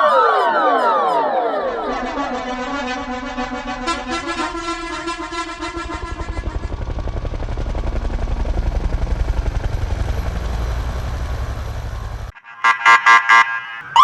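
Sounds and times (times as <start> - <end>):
pulsing musical tone: 0.0 - 4.7, 12.3 - 14.0
helicopter rotor chopping: 1.8 - 12.4.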